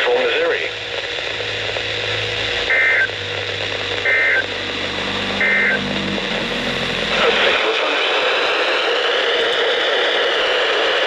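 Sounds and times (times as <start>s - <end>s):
radio static hiss: 0.0s - 8.6s
data tone bursts: 0.7s - 7.6s.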